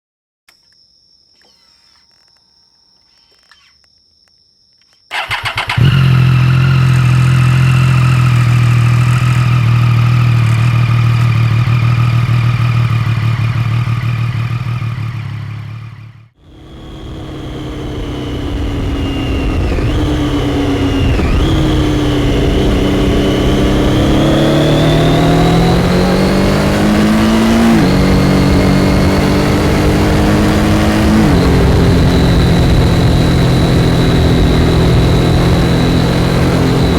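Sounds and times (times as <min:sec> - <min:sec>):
motorcycle engine revving while riding: 0:05.1 - 0:36.9
motorcycle engine starting: 0:05.1 - 0:36.9
motorcycle engine idling: 0:05.2 - 0:23.8.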